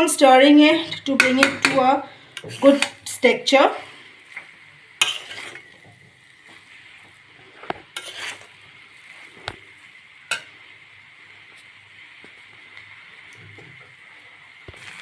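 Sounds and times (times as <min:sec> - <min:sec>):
faint sizzle: 0:00.0 - 0:15.0
spoon scraping in a pan: 0:00.4 - 0:10.7.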